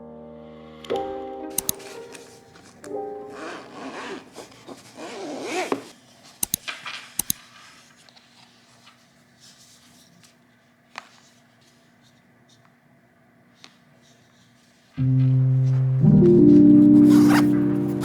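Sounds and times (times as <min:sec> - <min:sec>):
background music: 0:00.0 - 0:04.3, 0:15.0 - 0:18.0
piano notes: 0:00.0 - 0:04.8, 0:15.0 - 0:18.0
sharp clicks: 0:01.5 - 0:02.2, 0:06.4 - 0:07.4
zipper-like rasping rub: 0:01.7 - 0:06.1, 0:17.0 - 0:18.0.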